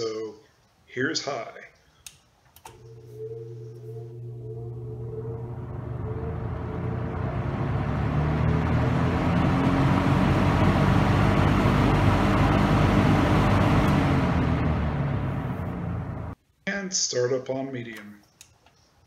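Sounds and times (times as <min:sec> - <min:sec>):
fan air rushing: 0:02.6 - 0:16.4
box fan motor humming: 0:02.7 - 0:16.4.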